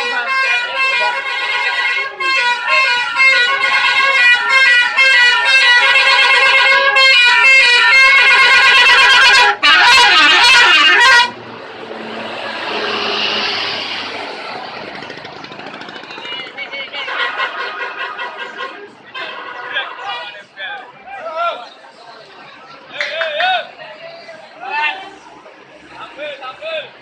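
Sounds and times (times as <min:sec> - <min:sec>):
bus multi-tone horn melody: 0:00.0 - 0:14.5, 0:17.0 - 0:20.4
rushing noise: 0:11.2 - 0:16.7.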